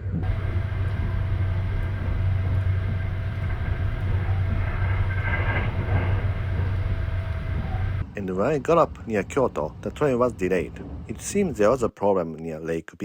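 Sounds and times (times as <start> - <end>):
high-pitched hiss: 0.0 - 8.0
train wheels rumbling: 0.0 - 8.0.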